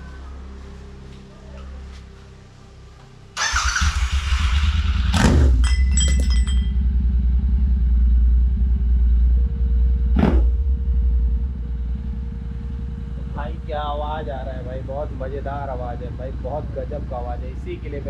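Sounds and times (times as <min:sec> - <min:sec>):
motorcycle engine starting and idling: 0:03.4 - 0:18.0.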